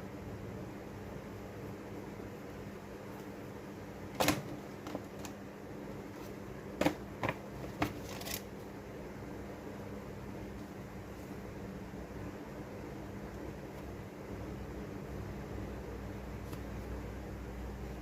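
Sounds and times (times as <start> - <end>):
steady low hum and hiss: 0.0 - 18.0.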